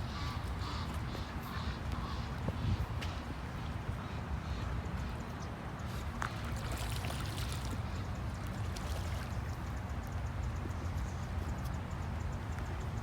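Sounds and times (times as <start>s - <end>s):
water trickling and splashing: 5.9s - 10.0s
low water rumble: 6.0s - 10.0s.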